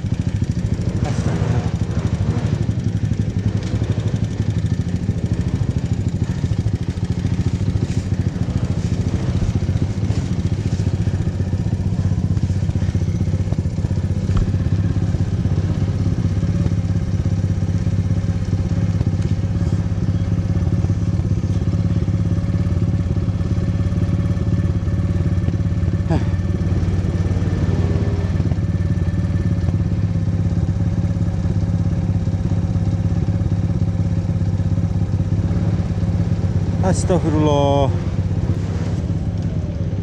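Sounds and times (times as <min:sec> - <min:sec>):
motorcycle engine running: 0:00.0 - 0:40.0.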